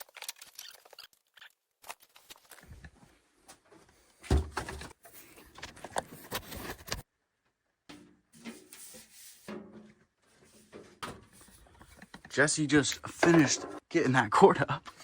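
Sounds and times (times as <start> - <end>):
objects knocking and scraping: 3.9 - 7.0, 7.9 - 13.9.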